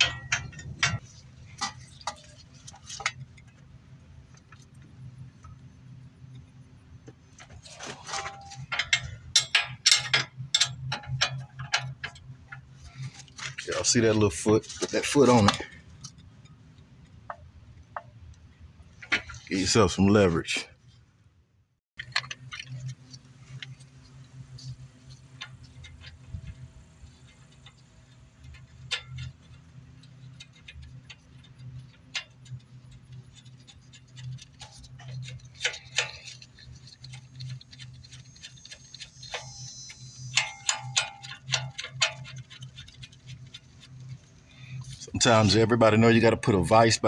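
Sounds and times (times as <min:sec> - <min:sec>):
light metal clicks and knocks: 0:00.0 - 0:03.6, 0:06.3 - 0:18.2, 0:22.0 - 0:45.0
steady low hum: 0:00.0 - 0:47.0
ratchet wrench clicking: 0:25.0 - 0:44.9.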